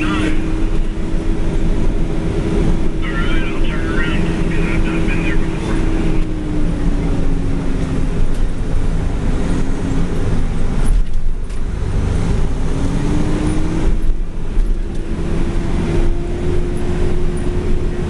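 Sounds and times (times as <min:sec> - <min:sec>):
machinery whine: 0:00.0 - 0:08.9
diesel engine drone: 0:00.0 - 0:18.0.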